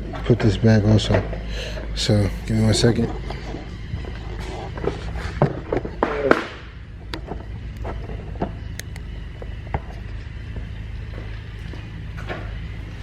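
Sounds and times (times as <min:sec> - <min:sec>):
steady low hum: 0:00.0 - 0:13.0
car body parts clicking and knocking: 0:02.9 - 0:12.8.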